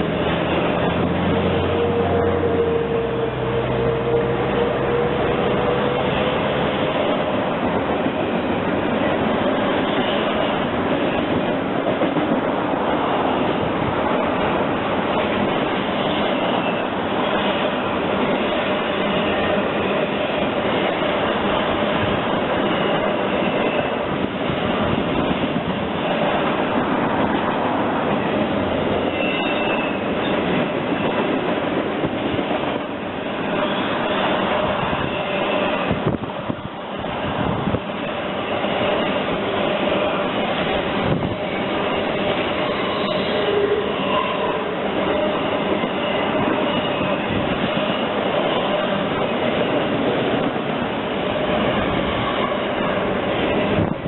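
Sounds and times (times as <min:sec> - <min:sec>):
freight train rolling past: 0:00.0 - 0:54.0
faint wheel squeal: 0:28.9 - 0:31.1, 0:33.4 - 0:36.0, 0:41.3 - 0:49.0.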